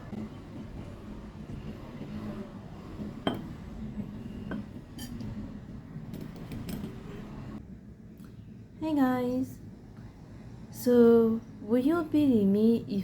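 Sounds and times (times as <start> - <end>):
utensil clinking against dish: 3.0 - 3.7, 4.3 - 5.5.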